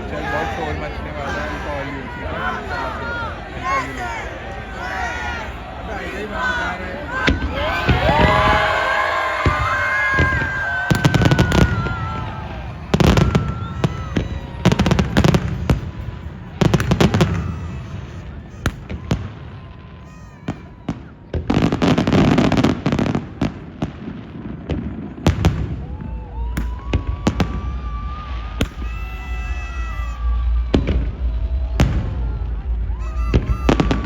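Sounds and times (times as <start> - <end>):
crowd cheering and whooping: 0.0 - 23.4, 25.2 - 34.0
fireworks bursting with sharp bangs: 7.2 - 34.0
fireworks crackling: 7.2 - 34.0.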